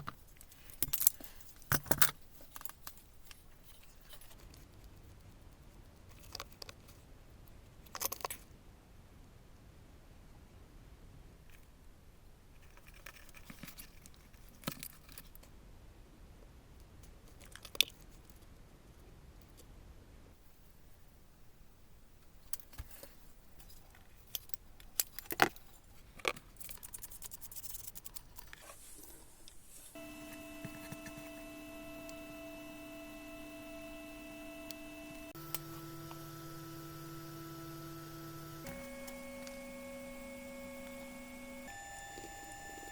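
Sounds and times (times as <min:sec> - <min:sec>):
soft rustling: 0:27.3 - 0:30.0
electronic tone hum: 0:30.0 - 0:42.9
small clicks: 0:30.0 - 0:42.9.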